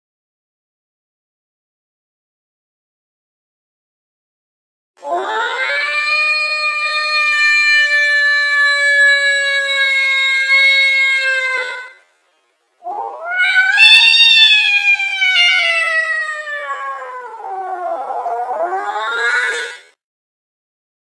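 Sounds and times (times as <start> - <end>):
angry cat yowling: 5.0 - 12.0, 12.8 - 20.0.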